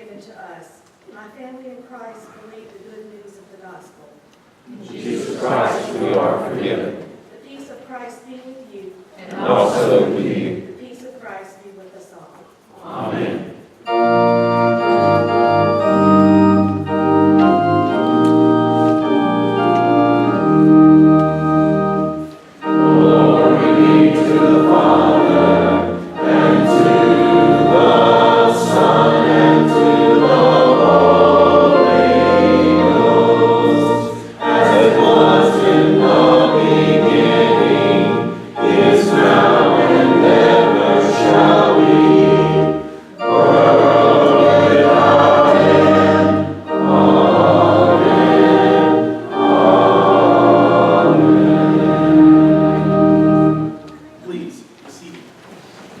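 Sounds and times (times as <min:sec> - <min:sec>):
choir singing: 0:04.7 - 0:07.2, 0:09.2 - 0:10.7, 0:12.7 - 0:53.8
church organ chords: 0:05.0 - 0:07.0, 0:12.9 - 0:54.0.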